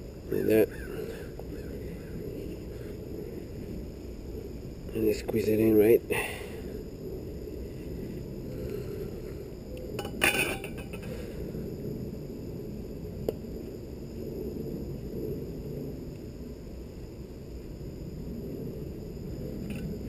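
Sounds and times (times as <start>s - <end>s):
low background hum: 0.0s - 20.0s
metal parts scraping and clinking: 10.0s - 11.1s.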